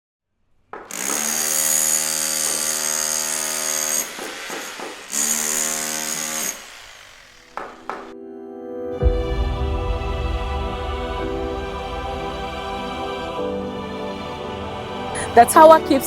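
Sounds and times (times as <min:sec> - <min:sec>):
sharp knocks: 0:00.7 - 0:01.3, 0:04.1 - 0:05.2, 0:07.5 - 0:08.2
power tool whining: 0:00.8 - 0:08.1.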